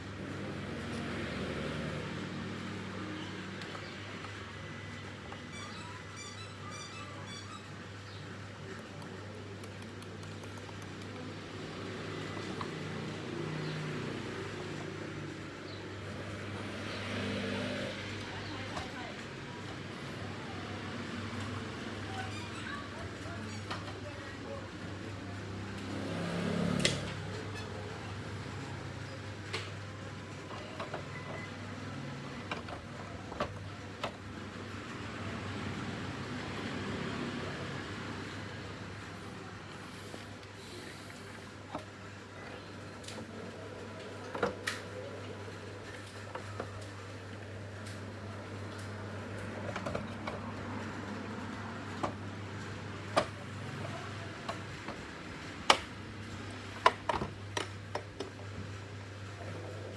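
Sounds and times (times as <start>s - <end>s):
mechanical hum with low drone: 0.0s - 59.9s
sharp clicks and taps: 8.7s - 11.3s.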